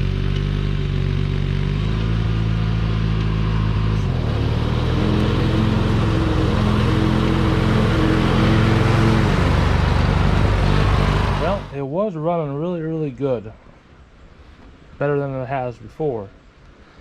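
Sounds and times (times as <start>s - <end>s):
riding mower engine running: 0.0s - 11.8s.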